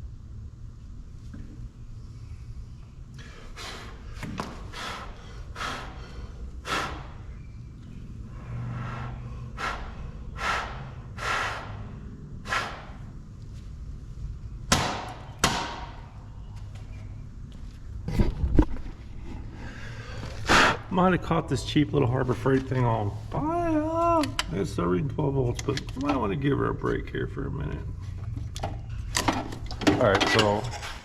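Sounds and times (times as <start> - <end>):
low steady hum: 0.0 - 31.0
short breathy puffs of air: 3.2 - 7.4, 8.4 - 13.1.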